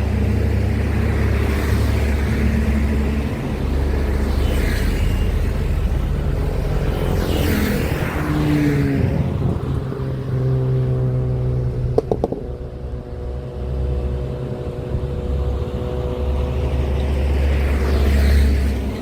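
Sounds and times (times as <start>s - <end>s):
diesel truck engine rumbling: 0.0s - 19.0s
knocks: 11.9s - 12.6s.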